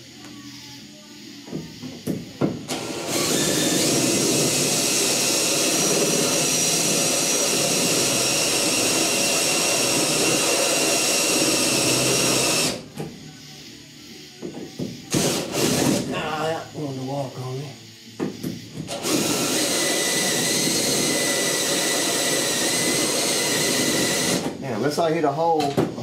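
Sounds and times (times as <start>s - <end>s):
drill whining into sheet metal: 2.7s - 12.8s, 15.0s - 17.0s, 18.9s - 24.5s.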